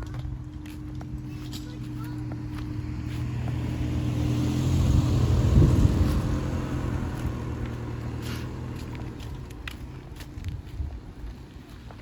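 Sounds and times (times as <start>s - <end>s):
vehicle driving past: 1.8s - 9.8s.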